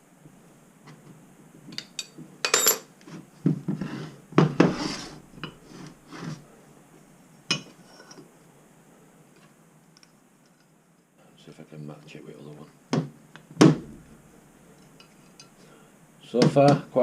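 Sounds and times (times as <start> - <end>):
metal parts clinking and knocking: 1.8 - 2.9.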